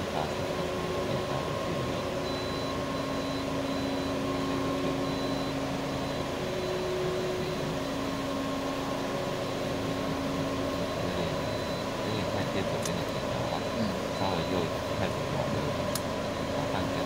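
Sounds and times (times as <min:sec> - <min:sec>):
car cabin hum: 0:00.0 - 0:17.0
faint steady tones: 0:00.0 - 0:17.0.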